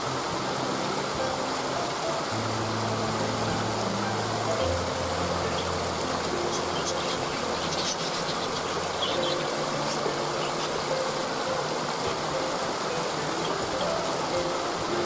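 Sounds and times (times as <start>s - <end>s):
waterfall rushing: 0.0s - 15.0s
faint bird chirps: 5.4s - 10.9s.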